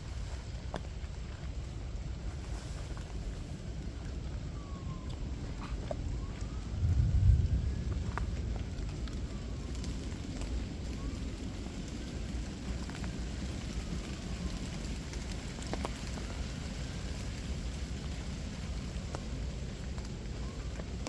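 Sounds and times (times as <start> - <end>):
steady rain falling: 0.0 - 21.0
raindrops ticking: 5.1 - 21.0.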